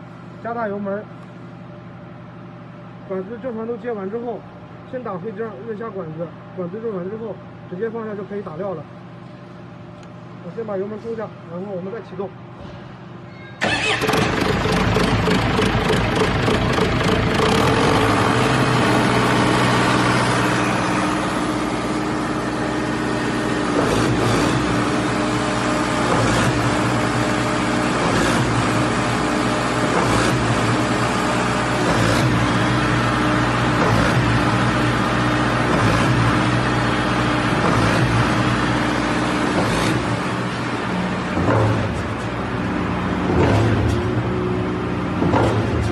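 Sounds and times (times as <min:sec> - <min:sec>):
diesel concrete pump running: 0:00.0 - 0:45.9
sharp pump clunk: 0:41.4 - 0:42.4, 0:43.3 - 0:44.2, 0:45.2 - 0:45.9.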